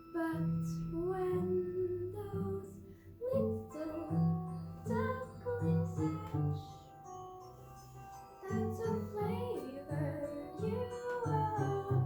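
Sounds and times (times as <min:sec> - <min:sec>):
child singing: 0:00.2 - 0:06.8, 0:08.4 - 0:12.0.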